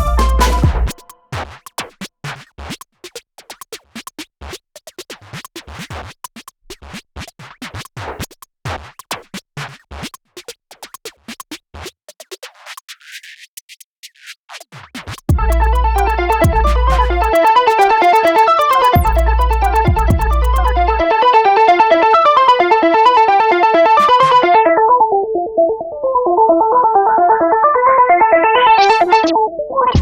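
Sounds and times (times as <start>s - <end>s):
background music: 0.0s - 1.2s, 15.4s - 25.3s.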